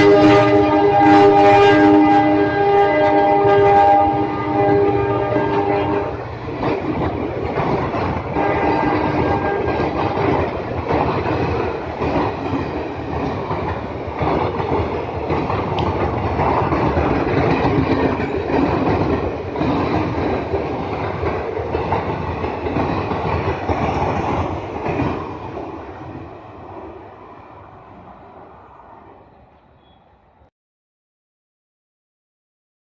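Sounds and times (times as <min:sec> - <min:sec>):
diesel locomotive horn: 0:00.0 - 0:06.3, 0:08.3 - 0:10.4
train wheels clattering over rail joints: 0:05.3 - 0:26.4.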